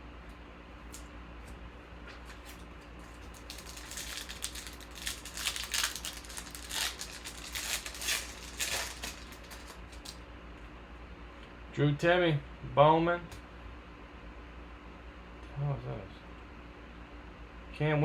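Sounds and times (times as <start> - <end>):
faint steady hum: 0.0 - 18.0
foil wrapper crinkling: 2.2 - 10.2.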